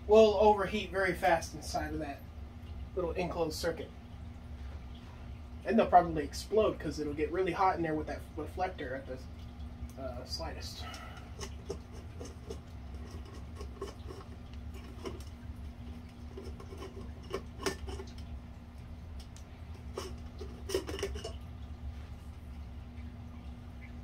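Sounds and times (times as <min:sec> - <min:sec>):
steady low hum: 0:00.0 - 0:24.0
fan parts clicking and scraping: 0:10.2 - 0:22.3.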